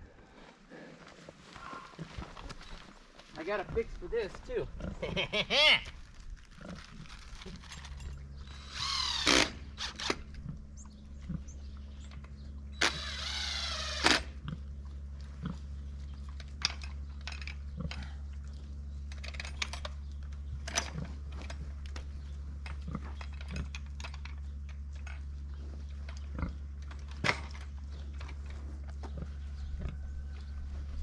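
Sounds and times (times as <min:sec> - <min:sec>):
small engine humming: 0:07.0 - 0:30.6.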